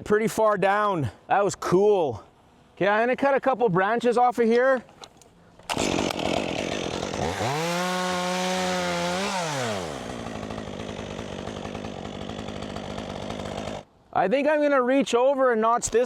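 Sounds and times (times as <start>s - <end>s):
chainsaw revving and idling: 5.7s - 13.9s.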